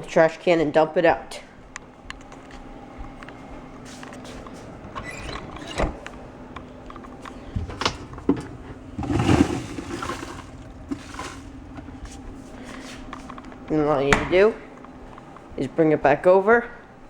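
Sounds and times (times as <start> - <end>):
coffee grounds rattling spill: 9.0 - 13.3.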